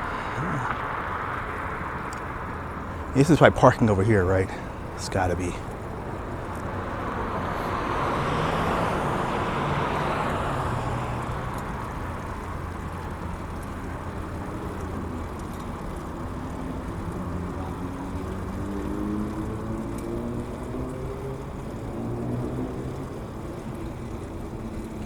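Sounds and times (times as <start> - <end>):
steady traffic noise: 0.0 - 25.0
vehicle passing close by: 0.0 - 25.0
engine revving: 6.5 - 13.8, 16.2 - 23.8.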